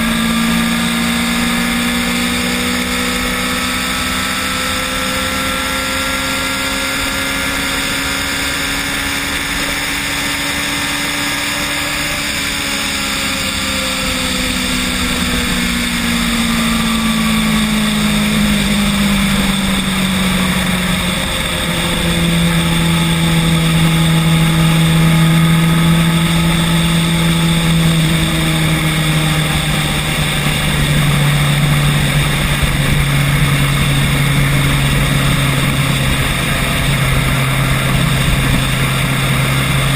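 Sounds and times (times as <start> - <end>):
electric scooter motor whining: 0.0 - 39.9
road and wind noise: 0.0 - 39.9.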